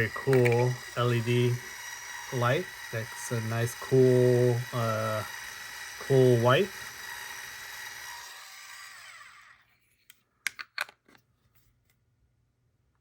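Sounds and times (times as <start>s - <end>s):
grinder motor whirring: 0.0s - 9.8s.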